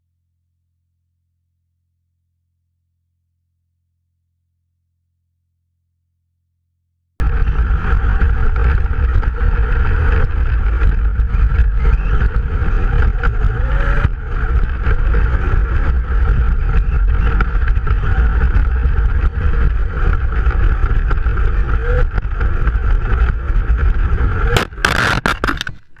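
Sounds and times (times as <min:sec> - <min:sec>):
wind buffeting microphone: 0:07.2 - 0:25.6
low rumble: 0:07.2 - 0:26.0.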